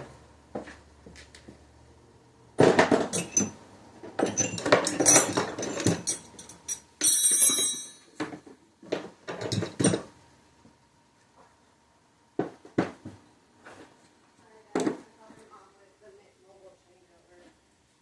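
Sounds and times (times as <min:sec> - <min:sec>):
metal tools clinking and clattering: 0:02.6 - 0:03.6, 0:04.2 - 0:08.4, 0:09.3 - 0:10.1
bright ringing metal clink: 0:04.3 - 0:08.2.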